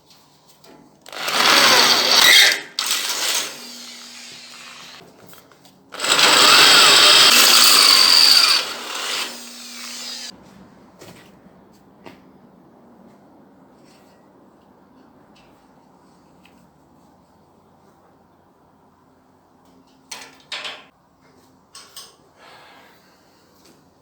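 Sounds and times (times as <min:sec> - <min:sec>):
handheld power tool running: 0:01.1 - 0:05.0, 0:06.0 - 0:10.3.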